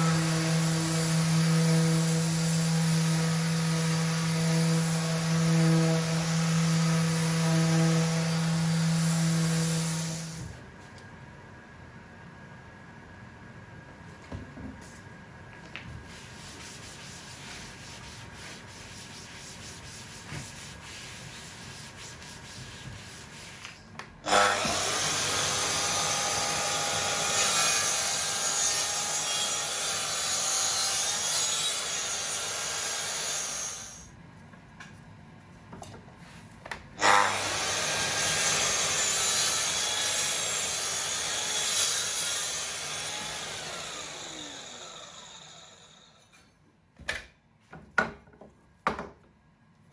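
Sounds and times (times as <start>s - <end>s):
power sander on plywood: 24.3s - 33.9s, 37.0s - 45.9s.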